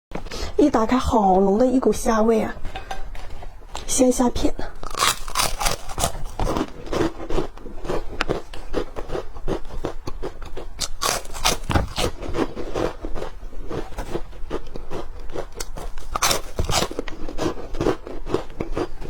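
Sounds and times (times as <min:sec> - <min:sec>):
crunching chips: 0:04.8 - 0:19.0.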